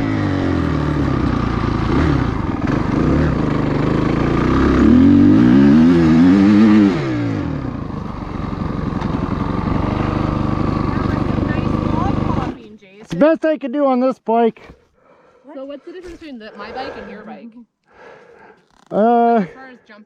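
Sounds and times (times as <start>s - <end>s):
dirt bike engine revving: 0.0s - 12.6s.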